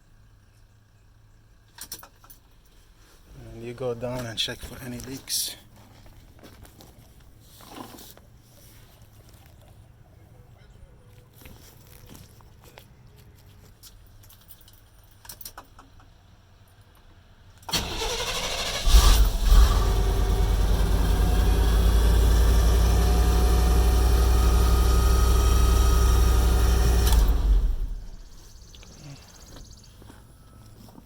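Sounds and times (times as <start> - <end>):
pickup engine cranking and idling: 15.6 - 28.8.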